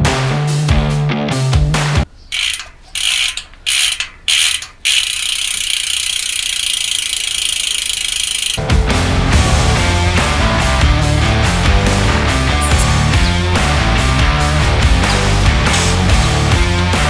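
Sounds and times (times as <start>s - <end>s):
bicycle freehub clicking: 2.2s - 8.7s, 12.6s - 16.4s.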